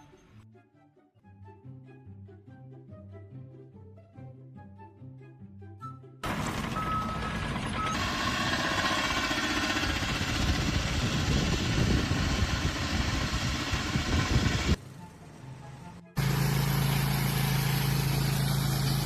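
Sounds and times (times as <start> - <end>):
engine rumbling: 6.2 - 19.0.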